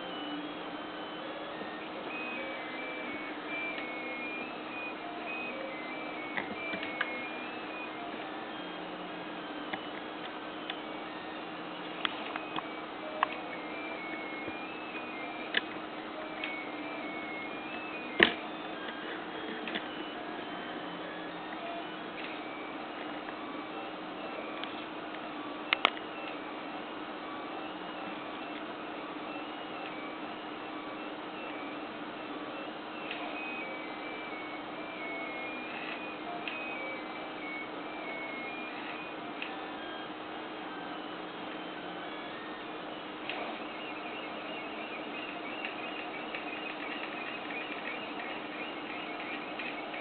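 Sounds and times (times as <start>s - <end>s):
stepper motor whine: 0.0s - 24.7s
stepper motors whining: 0.0s - 50.0s
clicks: 1.5s - 8.4s, 12.0s - 20.0s, 24.6s - 26.4s, 35.0s - 39.6s.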